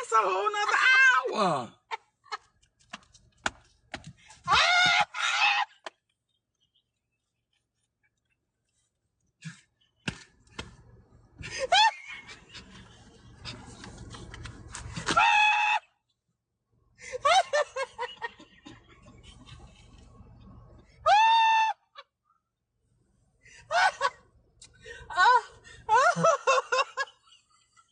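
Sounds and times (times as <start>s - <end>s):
woman shrieking laughter: 4.5s - 5.7s, 11.5s - 12.4s, 17.1s - 18.1s, 21.1s - 22.1s, 23.7s - 24.2s, 25.1s - 27.1s.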